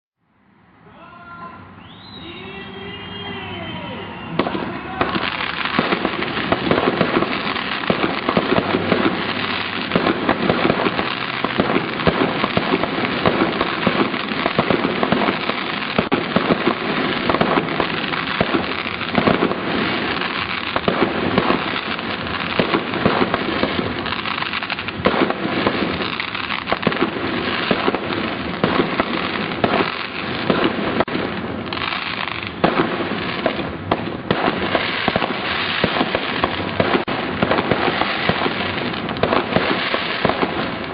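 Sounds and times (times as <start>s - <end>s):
fireworks crackling: 1.9s - 40.9s.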